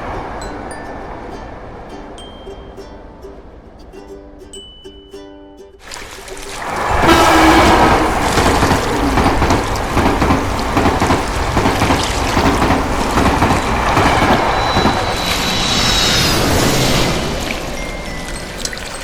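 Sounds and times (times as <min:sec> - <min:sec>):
train rumbling and clattering: 0:00.0 - 0:01.9, 0:06.5 - 0:19.0
thin high tone: 0:00.0 - 0:08.5, 0:13.7 - 0:19.0.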